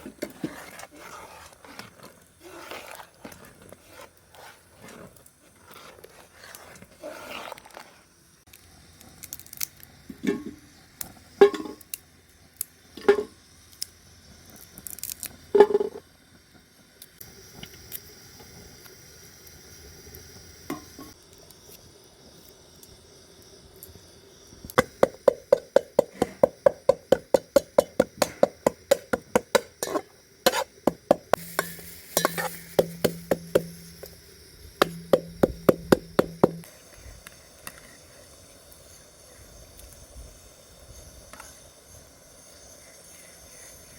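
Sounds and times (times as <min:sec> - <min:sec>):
utensils striking cookware: 0:24.8 - 0:34.1, 0:34.8 - 0:36.6.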